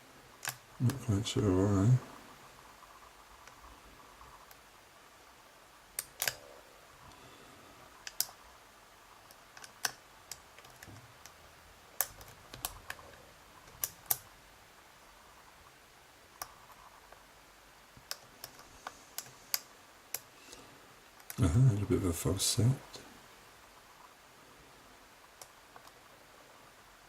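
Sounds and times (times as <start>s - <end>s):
lock pick metallic clicks: 6.0s - 6.4s.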